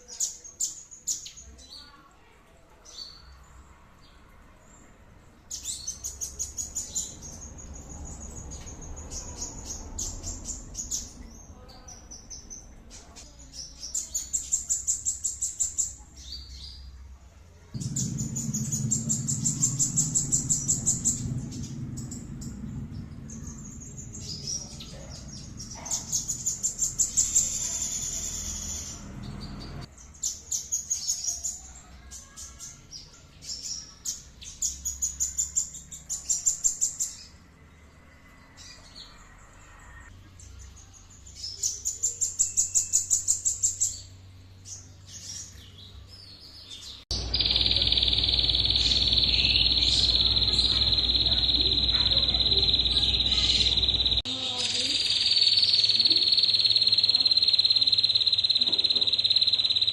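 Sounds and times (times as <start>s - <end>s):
songbird singing trills: 17.7s - 32.6s, 40.3s - 59.9s
loud steady high buzz: 17.8s - 29.9s, 47.1s - 54.9s.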